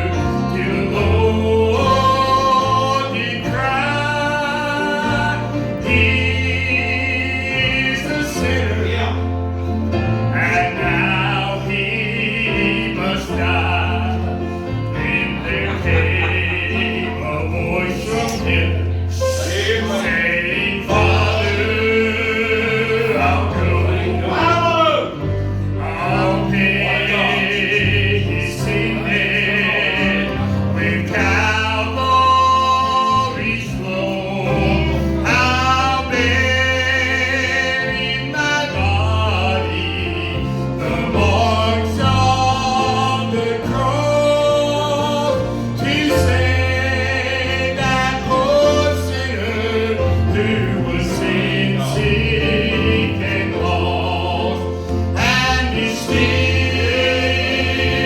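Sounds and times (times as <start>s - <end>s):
instrumental accompaniment: 0.0s - 58.0s
voices singing gospel: 0.0s - 58.0s.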